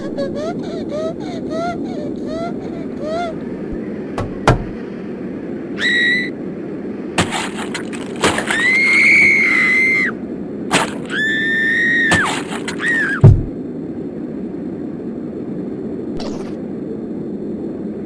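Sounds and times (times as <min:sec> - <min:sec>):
high-pitched squealing cries: 0:00.0 - 0:03.5, 0:05.8 - 0:06.3, 0:08.5 - 0:10.2, 0:11.0 - 0:13.2.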